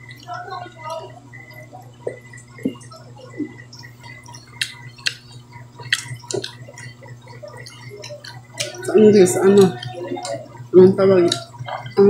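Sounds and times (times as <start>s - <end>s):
wet chewing and mouth smacks: 2.0s - 10.4s.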